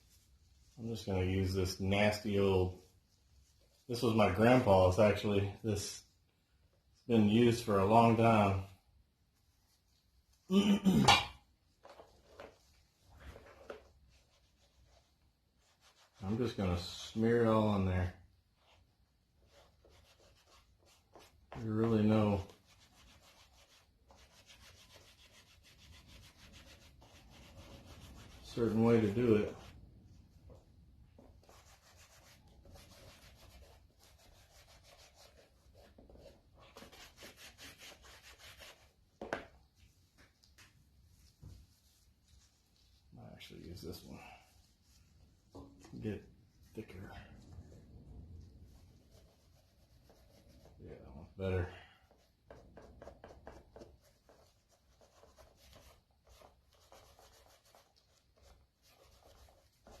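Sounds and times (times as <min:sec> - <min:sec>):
wax rubbing on leather: 0:18.6 - 0:29.8, 0:31.2 - 0:39.0, 0:48.4 - 0:50.9.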